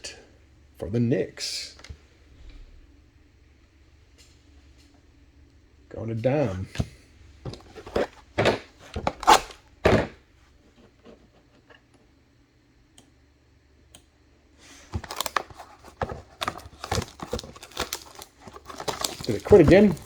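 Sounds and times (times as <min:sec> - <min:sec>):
wrapper being torn and crinkled: 0:15.0 - 0:20.0.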